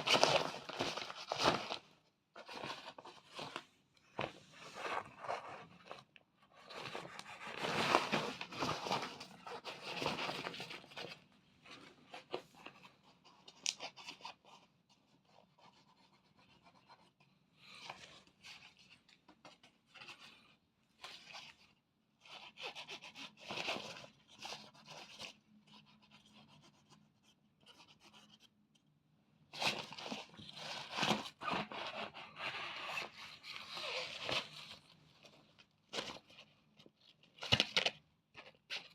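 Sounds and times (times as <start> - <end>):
cat rustling crinkly tunnel: 0.0 - 13.2, 29.5 - 38.0.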